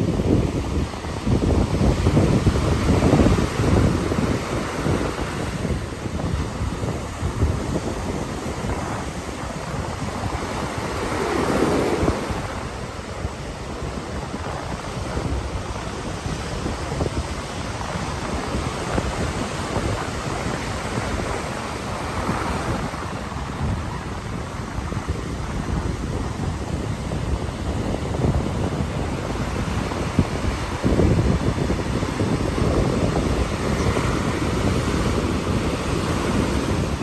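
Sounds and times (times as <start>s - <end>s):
ocean surf breaking: 0.0s - 37.0s.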